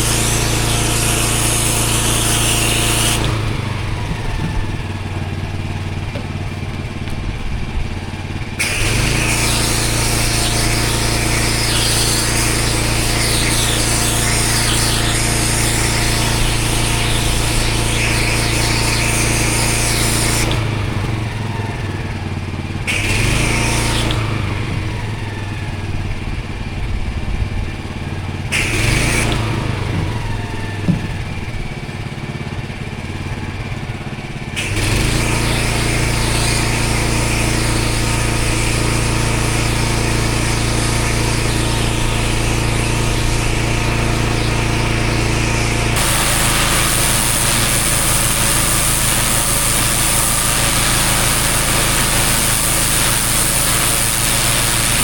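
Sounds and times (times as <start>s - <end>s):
water jet hissing onto paving: 0.0s - 7.1s, 8.4s - 22.0s, 22.7s - 25.5s, 28.3s - 31.7s, 34.4s - 55.0s
pressure washer engine running: 0.0s - 55.0s.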